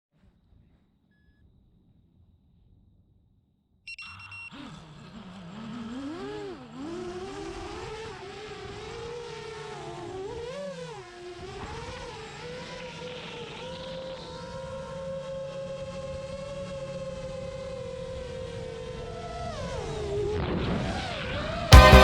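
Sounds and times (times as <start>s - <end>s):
drone motors whining: 4.0s - 20.5s.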